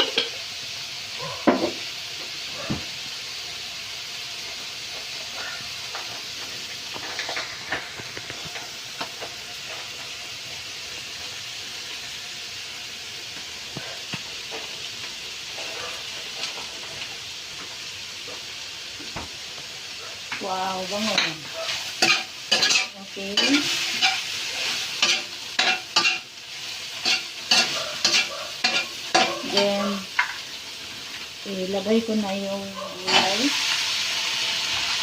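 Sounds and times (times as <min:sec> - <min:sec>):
food sizzling in a frying pan: 0:00.0 - 0:35.0.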